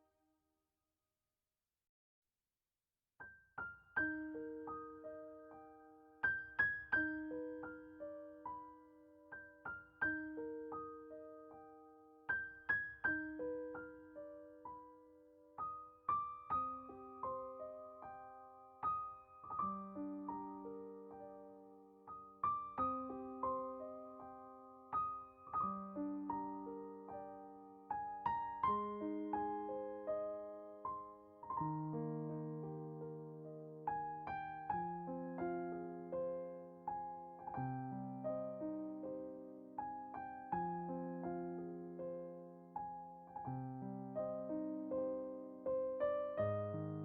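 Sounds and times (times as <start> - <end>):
soft solo piano music: 3.2 - 47.0.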